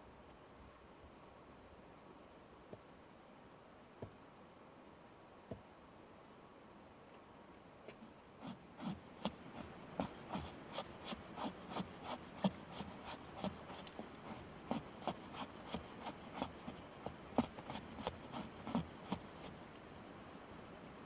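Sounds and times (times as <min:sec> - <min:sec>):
hand tool scraping wood: 0:08.4 - 0:19.6.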